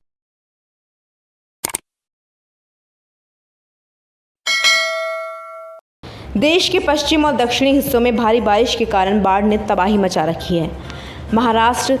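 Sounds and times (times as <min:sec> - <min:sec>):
ringing bell-like chime: 0:04.5 - 0:05.8.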